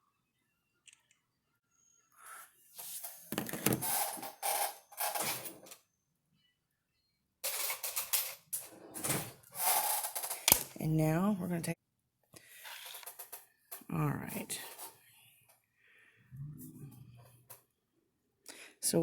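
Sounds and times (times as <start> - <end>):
objects clattering on a desk: 2.8 - 5.8, 7.4 - 10.8, 12.7 - 13.9.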